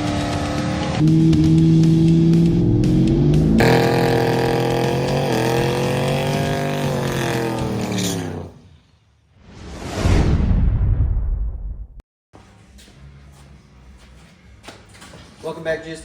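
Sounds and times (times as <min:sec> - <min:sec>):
car engine revving: 0:00.0 - 0:08.7.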